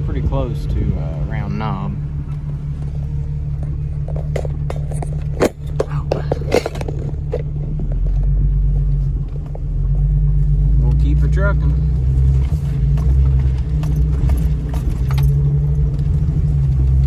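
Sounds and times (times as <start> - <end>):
car engine running slowly: 0.0 - 17.0
sharp knocks and rattles: 2.2 - 8.4, 12.4 - 17.0.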